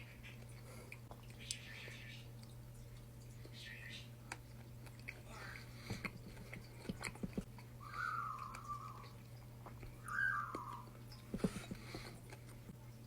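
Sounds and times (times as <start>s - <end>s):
bird warbling calls: 7.8s - 9.2s, 10.0s - 10.9s.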